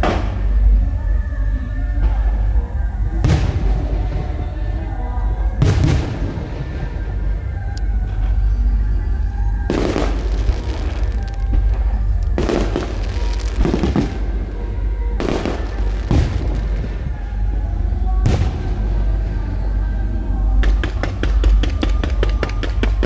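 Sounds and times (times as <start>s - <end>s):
background music: 0.0s - 23.0s
steady low rumble: 0.0s - 23.0s
fireworks booming: 3.0s - 8.5s, 9.5s - 19.8s, 20.5s - 23.0s.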